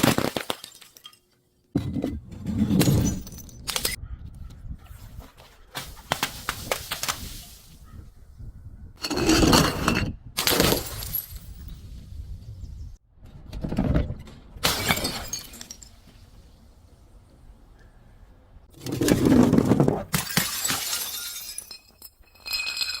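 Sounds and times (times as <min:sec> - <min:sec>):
glass bottles shattering: 0:00.0 - 0:01.4, 0:02.6 - 0:04.0, 0:09.1 - 0:11.7, 0:14.6 - 0:16.2, 0:19.1 - 0:23.0.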